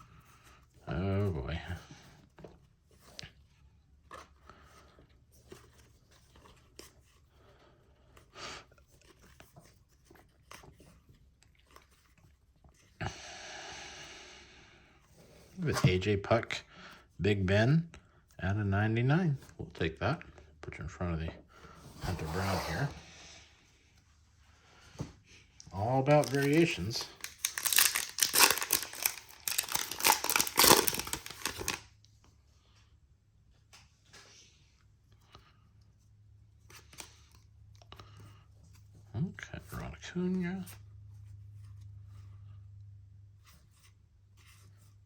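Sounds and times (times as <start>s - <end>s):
cards clicking and rustling: 25.6s - 31.8s
foil wrapper crinkling: 25.7s - 31.9s.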